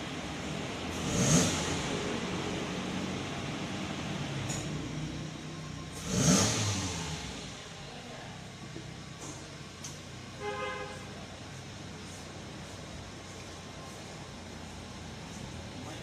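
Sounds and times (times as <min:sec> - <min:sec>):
motor vehicles passing: 0:00.0 - 0:08.4
steady hum of traffic: 0:00.0 - 0:16.0.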